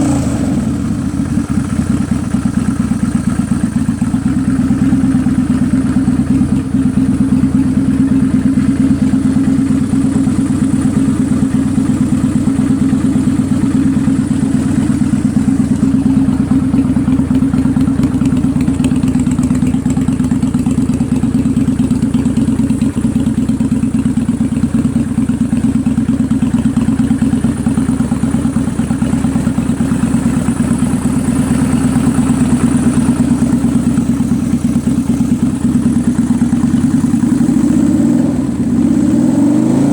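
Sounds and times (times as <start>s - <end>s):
motorcycle engine idling unevenly: 0.0s - 39.9s.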